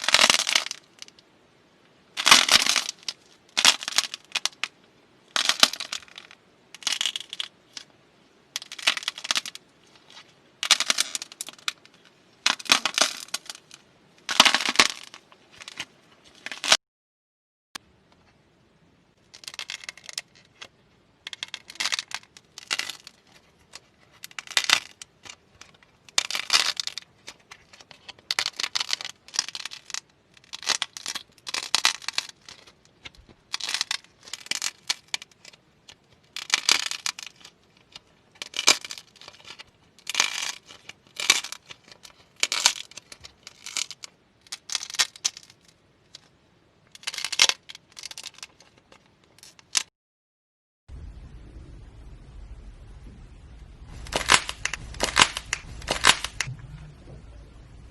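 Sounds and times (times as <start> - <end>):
clay cracking and crumbling: 0.0 - 1.4, 2.1 - 16.8, 19.2 - 49.9, 53.8 - 57.2.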